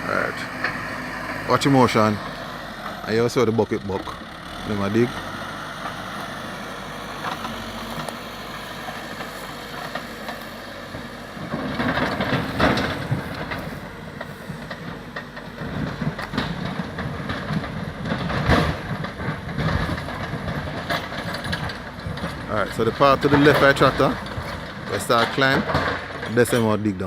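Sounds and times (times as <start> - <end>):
backhoe engine running: 0.0 - 27.0
bucket scraping and clanking: 11.4 - 14.6, 15.6 - 26.8.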